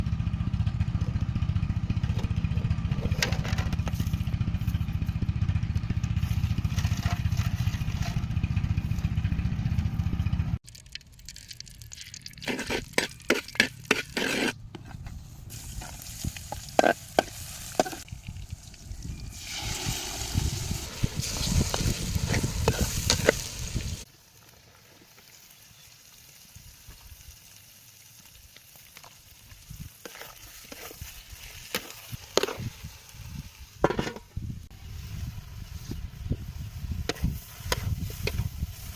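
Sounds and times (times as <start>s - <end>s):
food sizzling in a pan: 19.3s - 33.8s.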